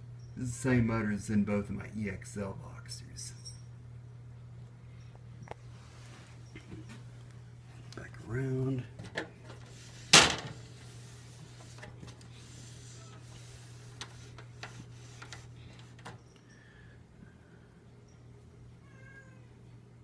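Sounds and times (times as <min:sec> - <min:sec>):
steady low hum: 0:00.0 - 0:20.0
fan cabinet clicks and bumps: 0:08.9 - 0:10.7, 0:13.2 - 0:16.2
cat meowing faintly: 0:18.8 - 0:19.8.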